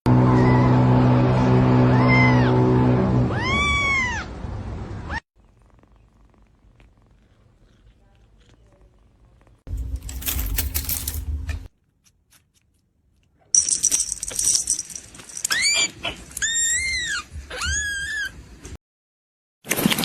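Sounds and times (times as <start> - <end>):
steady low hum: 4.3 - 11.7
rustling: 5.4 - 15.6.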